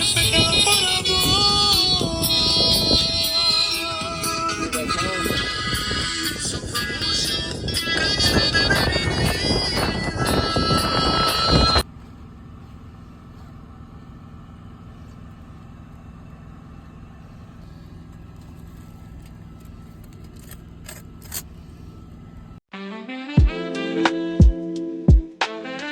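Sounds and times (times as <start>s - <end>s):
music: 0.0s - 11.8s, 22.7s - 25.9s
truck engine running: 0.0s - 22.6s.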